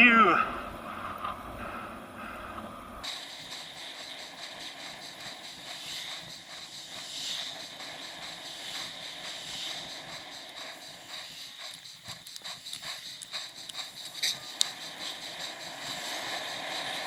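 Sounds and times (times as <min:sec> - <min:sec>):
wind and tyres hissing on road: 0:00.5 - 0:17.0
faint ticking: 0:00.6 - 0:17.0.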